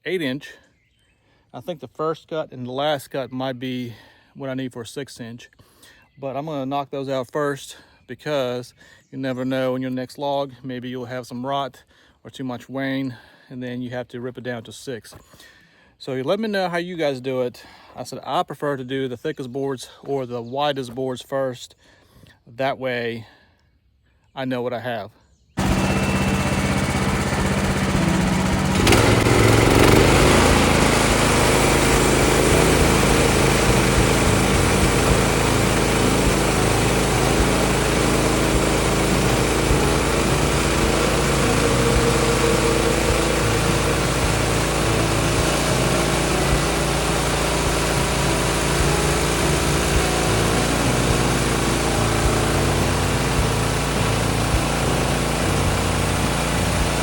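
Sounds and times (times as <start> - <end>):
bandsaw blade sawing log: 25.6 - 57.0
small gas engine running: 25.6 - 57.0.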